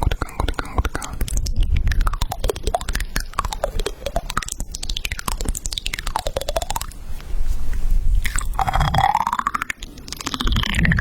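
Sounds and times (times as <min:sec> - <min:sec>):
crunchy chewing: 0:08.2 - 0:11.0.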